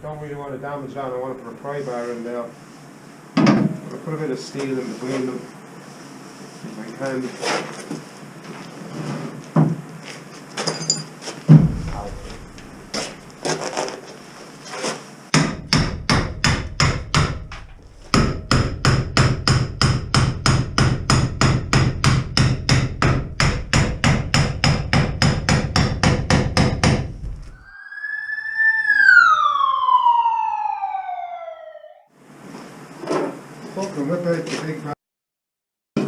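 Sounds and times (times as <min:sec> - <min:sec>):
whine falling in pitch: 0:27.6 - 0:32.1.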